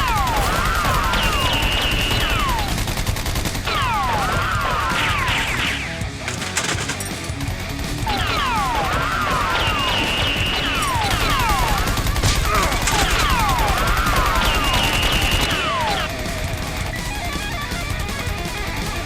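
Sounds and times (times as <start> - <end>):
automatic gunfire: 0.0 - 16.9
bullets whistling by: 0.4 - 2.8, 3.7 - 7.1, 8.1 - 16.2.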